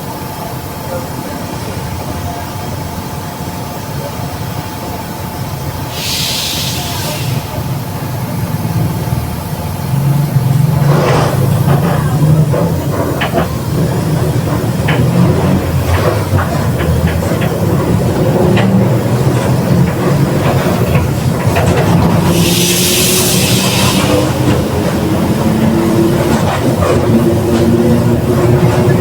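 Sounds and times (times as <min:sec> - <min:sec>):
bus engine: 0:00.0 - 0:29.0
rear differential whine: 0:00.0 - 0:29.0
air hiss: 0:05.8 - 0:07.8, 0:22.2 - 0:24.6.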